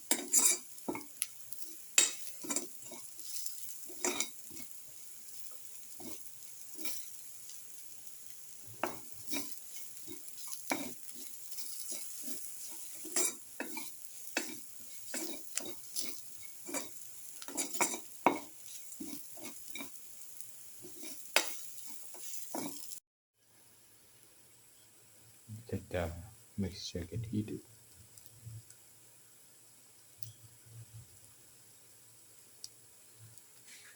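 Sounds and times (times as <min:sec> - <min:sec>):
food sizzling in oil: 0:00.0 - 0:23.0
utensil scraping and knocking pan: 0:00.1 - 0:01.2, 0:02.0 - 0:04.8, 0:08.7 - 0:20.0, 0:20.8 - 0:23.0.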